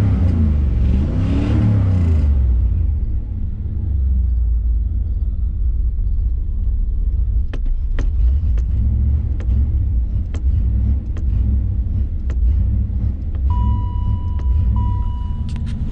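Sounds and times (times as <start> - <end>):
car engine running: 0.0 - 15.9
sharp engine ticks: 7.6 - 15.8
steady high tone: 13.5 - 15.7.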